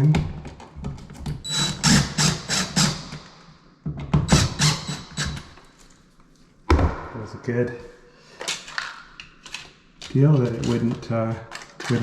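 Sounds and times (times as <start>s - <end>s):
tools clicking and knocking: 8.4s - 12.0s.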